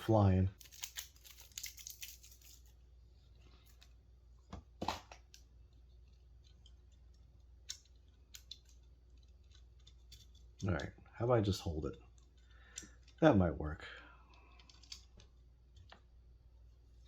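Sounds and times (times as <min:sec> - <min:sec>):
tape tearing and crackling: 0:00.6 - 0:02.7
light clicks of parts handled: 0:05.1 - 0:11.0, 0:14.3 - 0:16.1.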